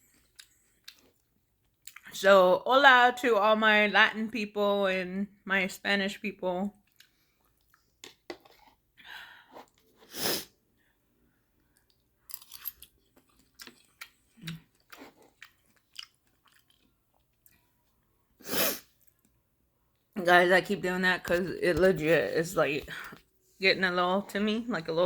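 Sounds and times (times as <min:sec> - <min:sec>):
chewing and mouth smacking: 0:00.1 - 0:02.1, 0:06.8 - 0:08.2, 0:11.7 - 0:17.7.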